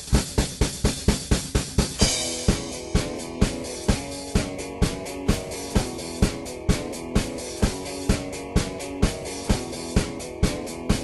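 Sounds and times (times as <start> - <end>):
drum beat: 0.0 - 11.0
cymbal crash: 2.0 - 4.2
held chords: 2.0 - 11.0.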